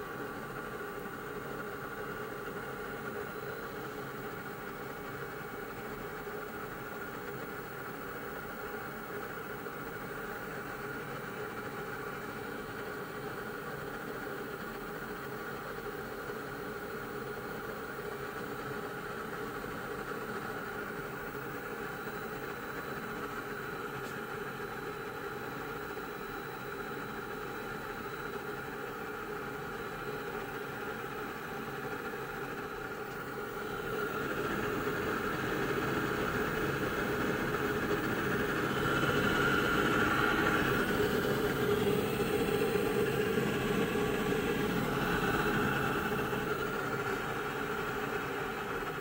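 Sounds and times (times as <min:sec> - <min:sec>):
water heater humming: 0:29.1 - 0:49.0.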